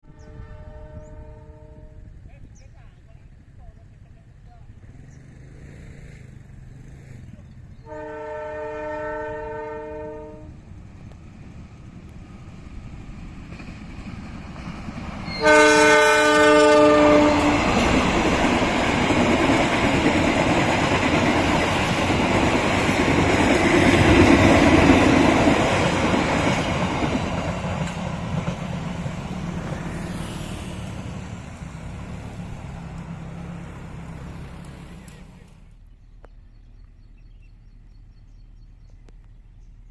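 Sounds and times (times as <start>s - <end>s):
locomotive horn blast: 0.0s - 2.2s, 7.8s - 10.6s, 15.2s - 18.4s
train passing rumble: 0.0s - 39.9s.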